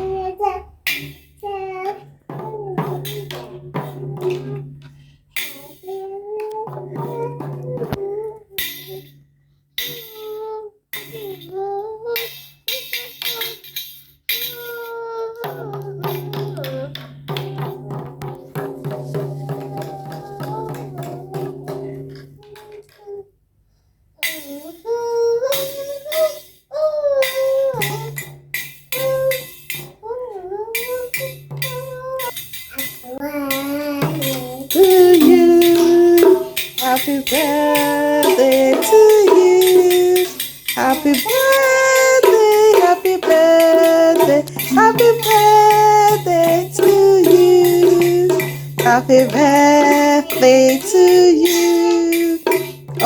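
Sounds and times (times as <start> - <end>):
jingling shaking percussion: 0.0 - 10.4, 11.0 - 22.4, 24.2 - 53.0
high voice singing: 14.9 - 22.1, 29.0 - 53.0
tambourine jingling: 30.8 - 53.0.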